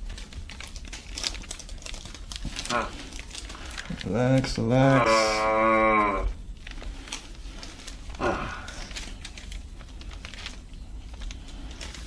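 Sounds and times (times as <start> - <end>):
breathy exhale: 8.2 - 9.0.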